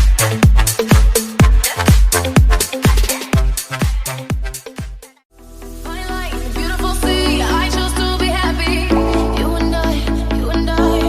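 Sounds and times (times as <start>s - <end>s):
kick drum: 0.0s - 5.1s
bass line: 0.0s - 11.0s
electronic dance music: 0.0s - 11.0s.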